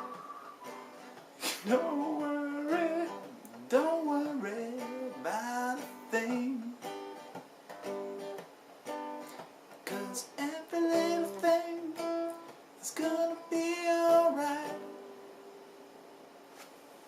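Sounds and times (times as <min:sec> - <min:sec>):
person singing: 0:01.4 - 0:06.9, 0:09.9 - 0:12.1, 0:12.8 - 0:14.9.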